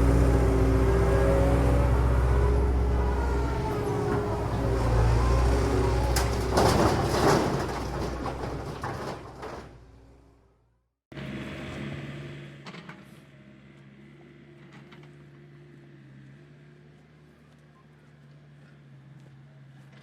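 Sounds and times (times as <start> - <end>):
excavator engine drone: 0.0 - 8.9
excavator engine idling: 0.0 - 10.1.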